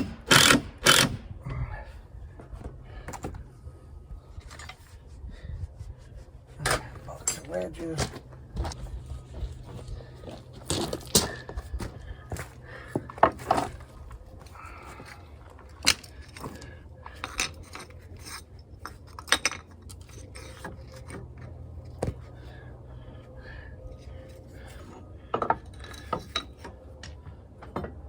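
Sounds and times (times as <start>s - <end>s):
steady low hum: 0.0s - 28.0s
metallic clinks and knocks: 25.3s - 28.0s.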